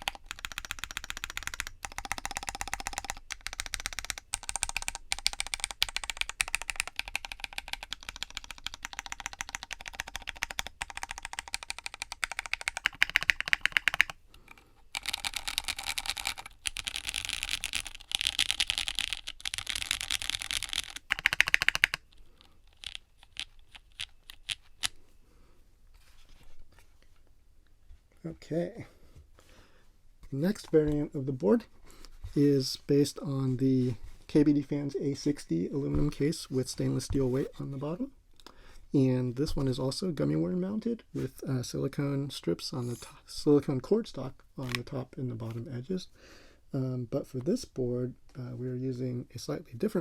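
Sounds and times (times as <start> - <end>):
fast mechanical keyboard typing: 0.0 - 14.2, 15.0 - 22.0.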